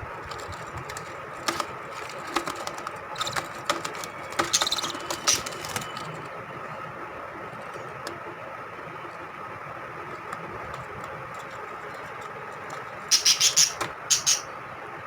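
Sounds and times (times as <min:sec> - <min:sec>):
steady mechanical hum: 0:00.0 - 0:15.0
lovebirds squawking: 0:04.5 - 0:05.7, 0:12.9 - 0:14.6.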